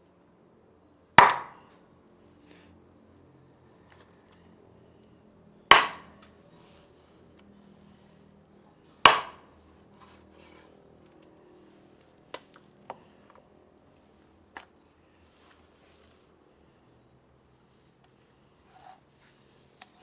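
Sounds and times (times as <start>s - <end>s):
loud sharp chopping blow: 1.2s - 1.6s.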